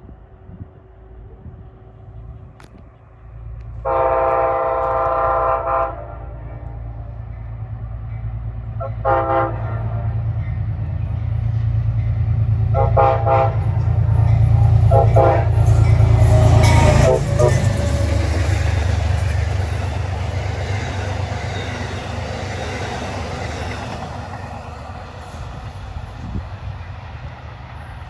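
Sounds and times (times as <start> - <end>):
train rumble: 0.0 - 28.0
train horn blasts: 3.7 - 7.3, 8.7 - 10.9, 12.3 - 23.4.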